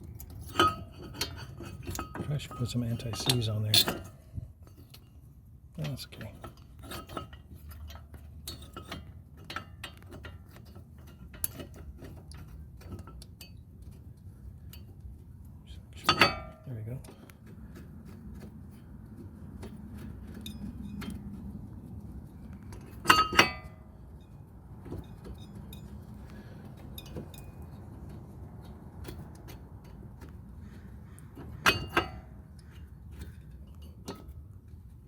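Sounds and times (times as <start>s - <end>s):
metal tools clinking: 0.0s - 5.1s, 16.0s - 17.2s, 22.6s - 30.0s
steady low hum: 10.7s - 35.0s.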